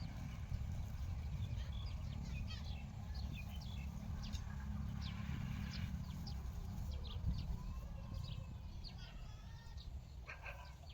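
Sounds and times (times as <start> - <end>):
steady low rumble: 0.0 - 9.0
small birds chirping: 0.0 - 10.9.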